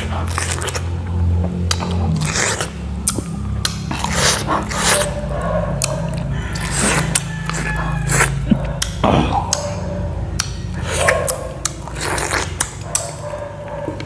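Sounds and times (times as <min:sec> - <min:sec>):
person chewing and smacking: 0:00.0 - 0:14.0
steady low hum: 0:00.0 - 0:14.0
sharp mouth clicks: 0:01.6 - 0:05.2, 0:07.0 - 0:13.3.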